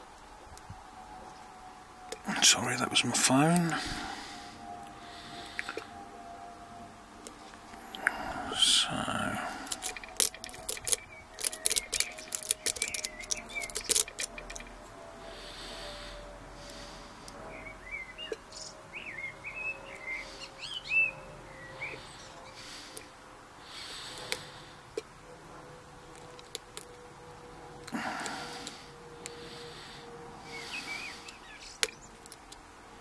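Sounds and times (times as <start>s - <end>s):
lock picks clicking in padlock: 9.6s - 14.7s, 26.1s - 26.9s
bird chirping: 10.0s - 14.5s, 15.4s - 22.8s, 29.5s - 32.2s.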